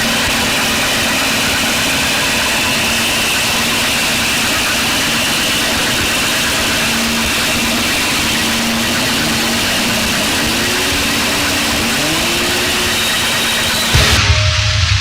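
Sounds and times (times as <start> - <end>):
roar of static noise: 5.7 - 13.9.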